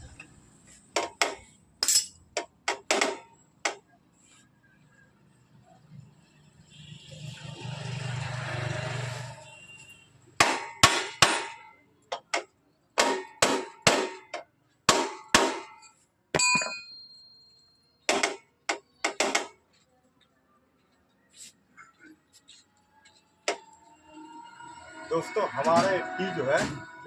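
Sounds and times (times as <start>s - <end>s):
hammer striking metal: 10.4s - 12.4s, 13.0s - 17.1s, 18.1s - 19.6s.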